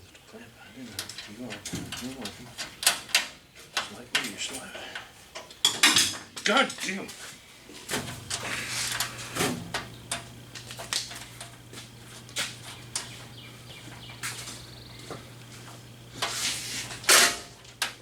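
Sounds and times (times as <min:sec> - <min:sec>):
steady low hum: 0:00.0 - 0:18.0
sheet metal and hand tools clanking: 0:01.0 - 0:06.8, 0:16.2 - 0:18.0.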